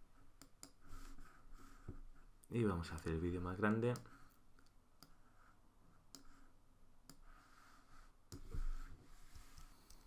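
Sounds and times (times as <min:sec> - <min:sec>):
computer mouse clicks: 0:06.1 - 0:06.4, 0:09.4 - 0:10.0.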